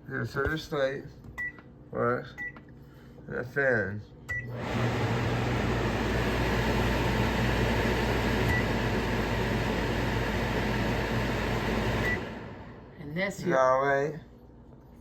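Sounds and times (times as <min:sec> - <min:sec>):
microwave vent fan humming: 0:04.2 - 0:13.7.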